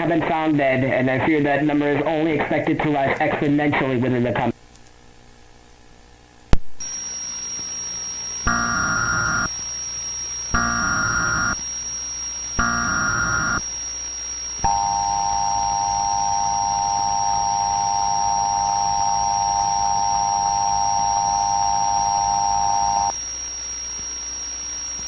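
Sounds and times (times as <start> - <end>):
warbling data noise burst: 6.8 - 13.8, 14.4 - 23.1.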